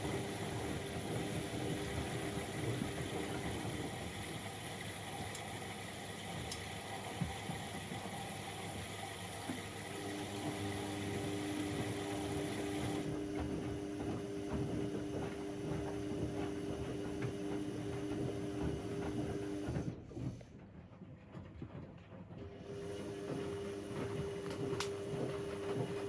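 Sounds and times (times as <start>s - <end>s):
washing machine motor hum: 0.0s - 26.0s
water sloshing and clicking: 5.2s - 5.6s, 6.3s - 7.7s, 23.2s - 26.0s.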